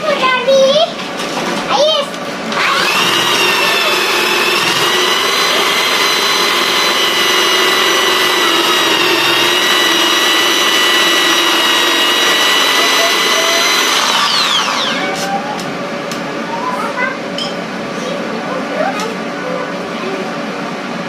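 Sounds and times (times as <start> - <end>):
electric drill whining: 2.5 - 15.3.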